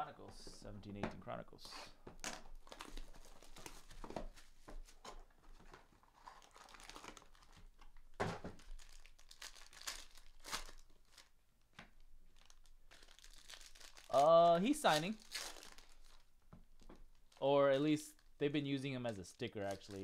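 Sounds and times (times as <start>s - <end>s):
foil wrappers tearing and crinkling: 6.1s - 7.6s, 8.6s - 11.3s, 12.3s - 16.2s, 19.1s - 20.0s
cards rustling: 18.8s - 20.0s.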